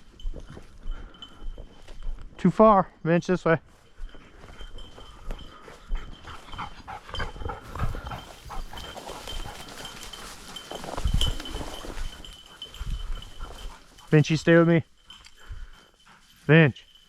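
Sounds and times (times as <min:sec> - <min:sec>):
dog collar bell ringing: 0:00.0 - 0:02.6, 0:03.3 - 0:17.0
footsteps in brush: 0:07.6 - 0:16.6.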